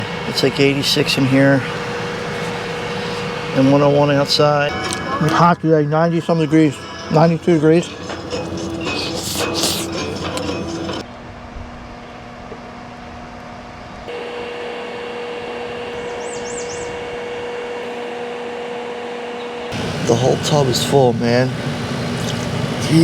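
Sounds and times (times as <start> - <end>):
machine hum: 0.0 - 23.0
high chirps: 15.9 - 17.7.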